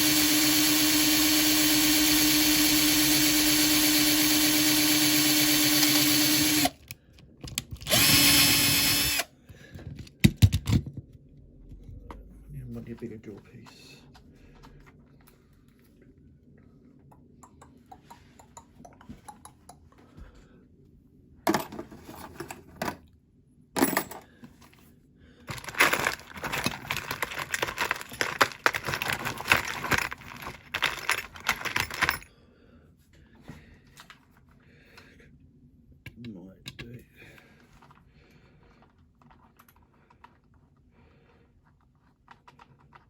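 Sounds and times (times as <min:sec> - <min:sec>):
metal drill bits clinking: 0:25.5 - 0:32.3.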